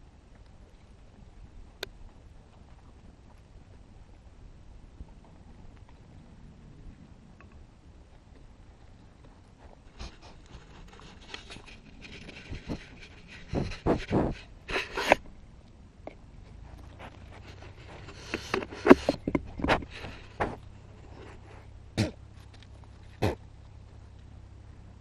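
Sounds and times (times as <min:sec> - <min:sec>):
goat sniffing and snorting: 0:08.9 - 0:15.3, 0:16.5 - 0:23.8
nose bumping microphone: 0:09.9 - 0:15.3, 0:16.8 - 0:22.2, 0:23.1 - 0:23.5.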